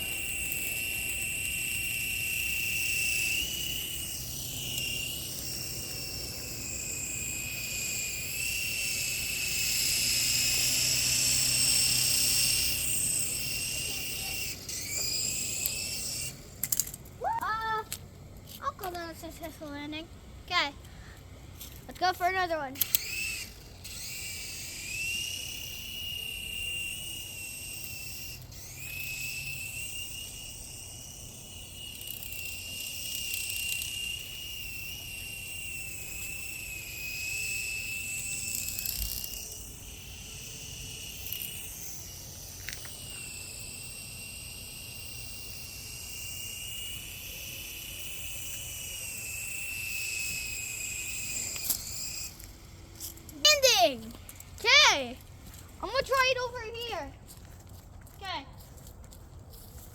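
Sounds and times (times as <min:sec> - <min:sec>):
toy helicopter motors whining: 0:00.0 - 0:59.9.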